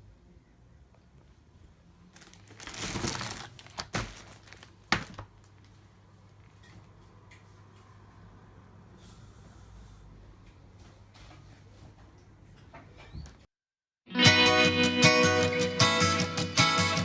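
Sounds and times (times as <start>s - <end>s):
rustling and crinkling: 2.1s - 6.9s.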